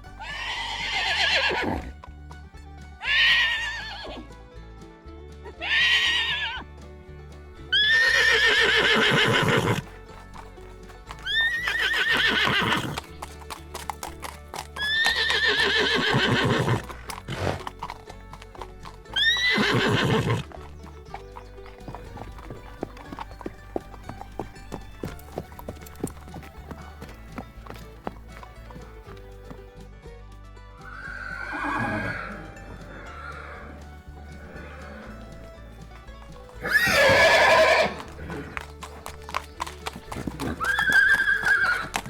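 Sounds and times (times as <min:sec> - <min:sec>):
horse whinnying: 0:00.0 - 0:02.1, 0:03.0 - 0:04.3, 0:05.4 - 0:06.6, 0:07.7 - 0:10.0, 0:11.1 - 0:13.2, 0:14.1 - 0:29.0, 0:30.8 - 0:35.5, 0:36.5 - 0:42.0
background music: 0:00.0 - 0:42.0
hoofbeats clip-clopping: 0:00.0 - 0:42.0.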